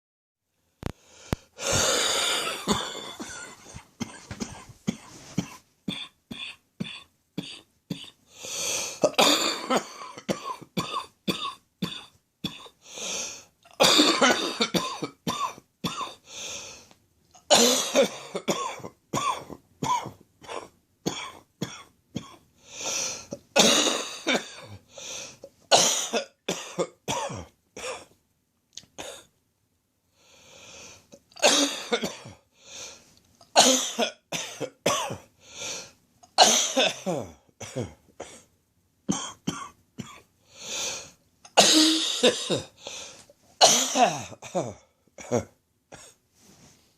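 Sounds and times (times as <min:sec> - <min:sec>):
deep chesty coughing: 0:01.6 - 0:08.2, 0:08.8 - 0:12.8, 0:13.7 - 0:16.2, 0:17.5 - 0:22.4, 0:23.0 - 0:24.9, 0:25.7 - 0:28.2, 0:31.4 - 0:32.4, 0:33.5 - 0:35.3, 0:36.3 - 0:38.5, 0:41.5 - 0:46.2.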